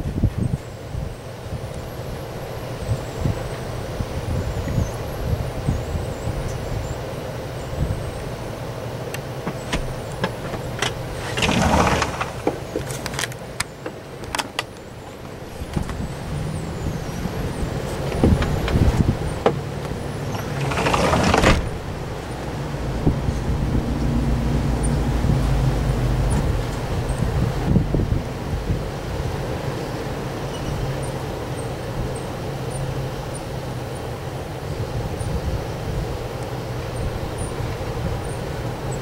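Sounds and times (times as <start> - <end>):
gusty wind buffeting microphone: 0.0 - 39.0
sharp clicks and rattles: 17.9 - 21.7.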